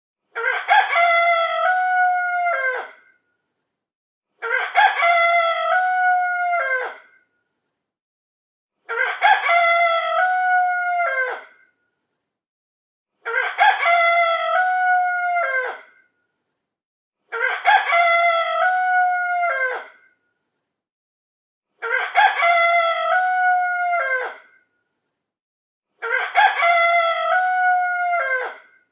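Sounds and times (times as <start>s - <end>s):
rooster crowing: 4.5s - 6.9s, 9.0s - 11.3s, 13.4s - 15.7s, 17.4s - 19.8s, 21.9s - 24.4s, 26.1s - 28.6s.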